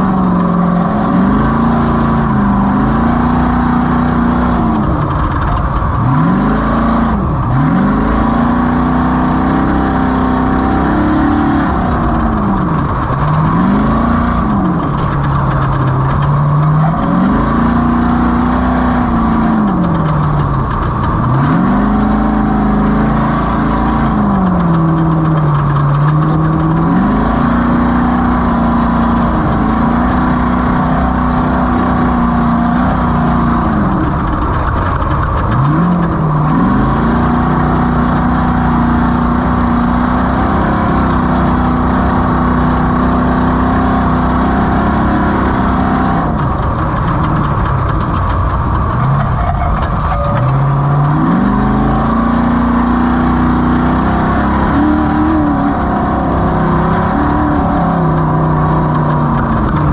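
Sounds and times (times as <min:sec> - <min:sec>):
race vehicle engine revving: 0:00.0 - 0:59.9.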